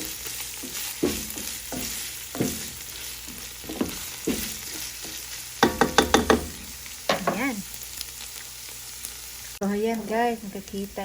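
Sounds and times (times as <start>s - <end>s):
meat sizzling in a frying pan: 0.0s - 11.0s
spatula scraping a pan: 0.5s - 7.5s.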